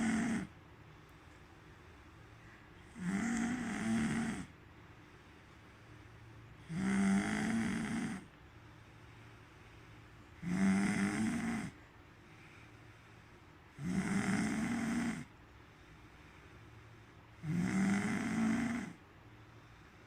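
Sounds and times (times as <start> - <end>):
person snoring loudly: 0.0 - 0.5, 2.9 - 4.5, 6.6 - 8.3, 10.4 - 11.8, 13.8 - 15.3, 17.4 - 19.0.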